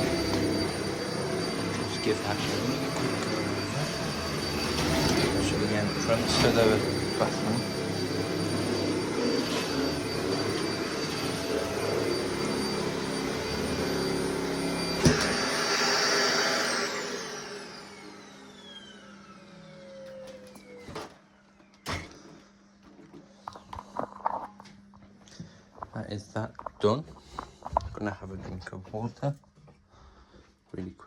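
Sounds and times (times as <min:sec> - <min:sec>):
motor winding down whine: 0:00.0 - 0:21.3
vacuum cleaner running: 0:00.0 - 0:29.0.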